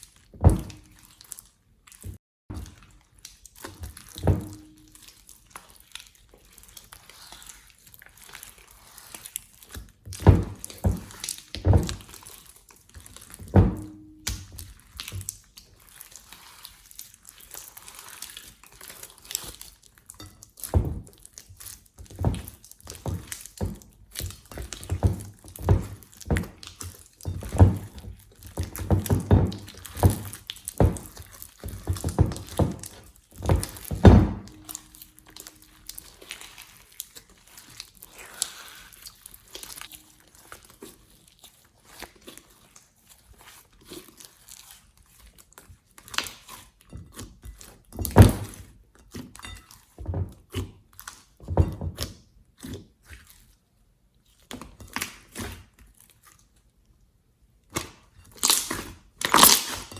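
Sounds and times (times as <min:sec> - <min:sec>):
slime squelching and popping: 0:00.0 - 0:53.6, 0:57.7 - 0:59.9
thunks: 0:00.4 - 0:00.8, 0:10.2 - 0:12.1, 0:13.4 - 0:14.1, 0:27.2 - 0:35.5.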